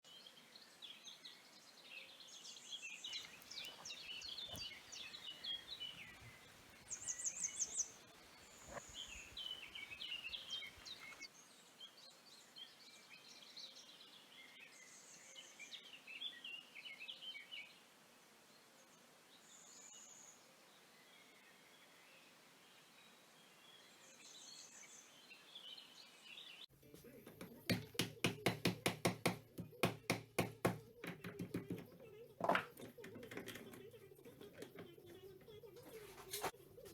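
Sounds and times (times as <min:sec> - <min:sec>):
birds singing and chirping: 0:00.1 - 0:12.0.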